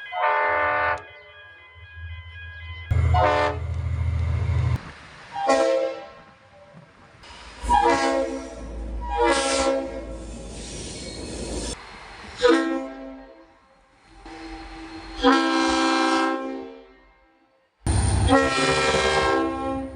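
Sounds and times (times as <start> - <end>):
train horn blasts: 0.0 - 1.2, 2.9 - 4.1, 5.3 - 6.2, 7.7 - 10.1, 12.4 - 13.4, 15.1 - 17.4, 18.1 - 19.9
train rumbling: 0.0 - 16.5, 17.9 - 19.9.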